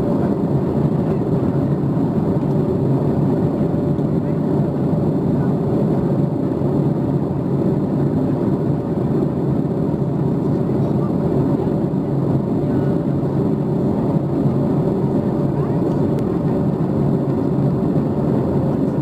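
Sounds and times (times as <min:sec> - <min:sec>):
airplane cabin noise in flight: 0:00.0 - 0:19.0.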